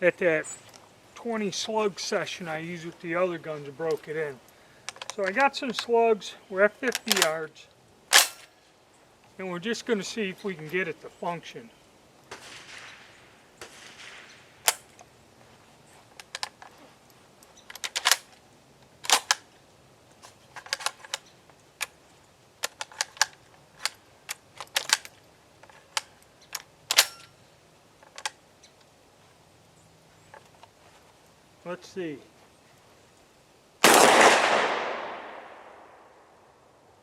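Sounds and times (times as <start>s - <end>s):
soft rustle: 0.0s - 33.7s
shotgun loading metallic clicks: 3.6s - 6.0s, 6.8s - 7.4s, 8.1s - 8.6s, 14.6s - 15.1s, 16.1s - 16.8s, 17.5s - 19.5s, 20.1s - 22.0s, 22.6s - 27.4s, 28.0s - 28.9s, 33.8s - 36.0s.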